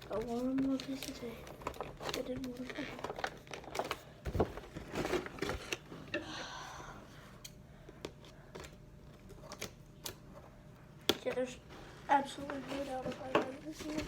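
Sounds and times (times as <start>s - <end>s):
packaging scraping and tearing: 0.0s - 5.8s
packaging clicks and rustles: 0.0s - 5.9s, 12.3s - 14.0s.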